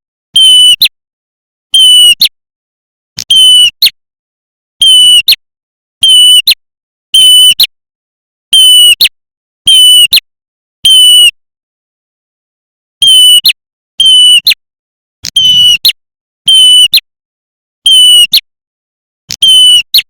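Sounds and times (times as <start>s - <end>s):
bird whistled call: 15.4s - 15.8s.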